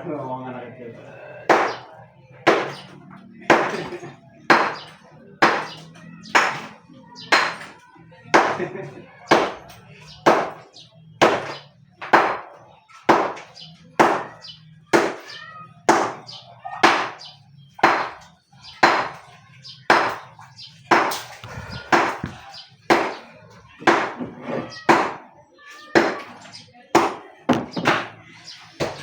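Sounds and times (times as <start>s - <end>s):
hammer striking hard material: 1.5s - 1.9s, 2.5s - 2.8s, 4.5s - 6.7s, 11.2s - 14.3s.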